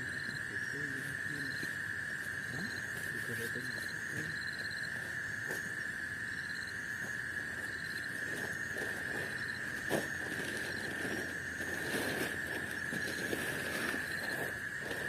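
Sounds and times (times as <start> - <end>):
crickets droning: 0.0 - 15.0
insect rapid trills: 0.0 - 15.0.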